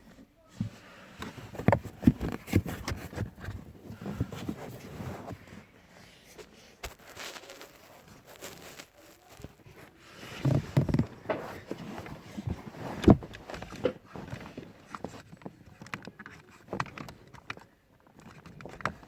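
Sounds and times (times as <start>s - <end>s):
handling knocks and clicks: 0.6s - 5.6s, 6.4s - 19.0s.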